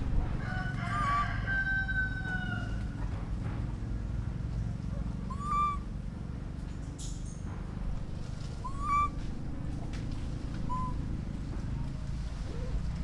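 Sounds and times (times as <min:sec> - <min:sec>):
low background rumble: 0:00.0 - 0:13.0
baby monkey calling: 0:05.1 - 0:06.0, 0:08.6 - 0:09.2, 0:10.6 - 0:11.0.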